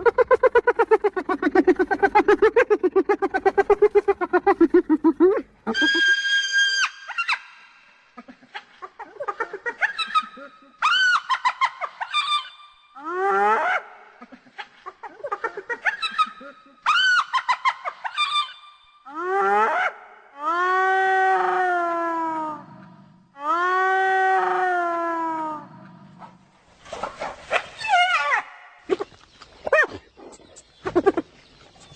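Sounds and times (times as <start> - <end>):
hyena giggling calls: 0.0 - 6.2, 8.2 - 18.5, 28.9 - 31.4
hyena whoops rising: 0.0 - 7.3.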